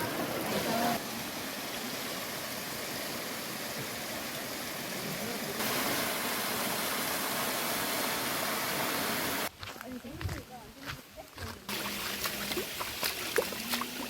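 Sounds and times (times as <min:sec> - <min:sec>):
stream rushing over rocks: 0:00.0 - 0:09.5, 0:11.7 - 0:14.0.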